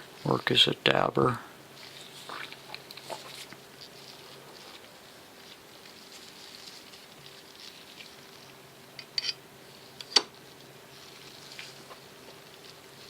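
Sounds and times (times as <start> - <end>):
faint steady hum: 0.0 - 13.0
knife parts and tools handled: 9.0 - 10.3.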